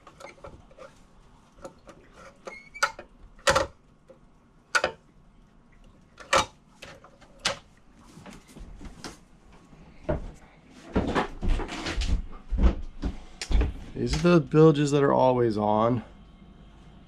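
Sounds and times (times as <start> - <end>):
sharp clicks and knocks: 2.8 - 5.0.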